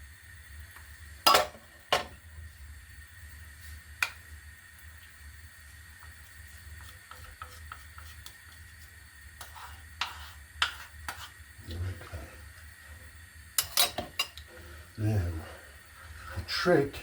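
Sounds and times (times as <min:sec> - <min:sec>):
spatula stirring in saucepan: 0:03.4 - 0:16.6.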